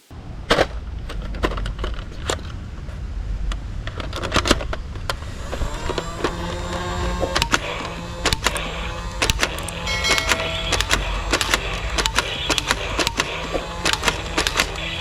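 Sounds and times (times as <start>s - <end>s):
faint steady tones: 7.5s - 15.0s.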